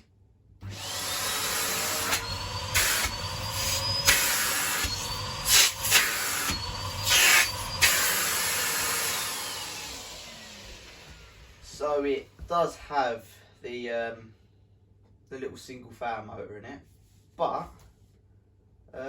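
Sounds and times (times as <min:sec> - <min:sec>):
vacuum extractor motor whining: 0:00.6 - 0:12.6.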